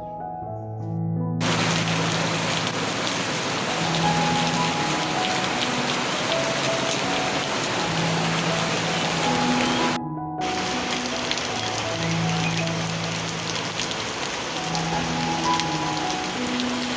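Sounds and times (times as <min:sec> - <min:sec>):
faint soft music: 0:00.0 - 0:02.2
steady rain falling: 0:01.4 - 0:16.9.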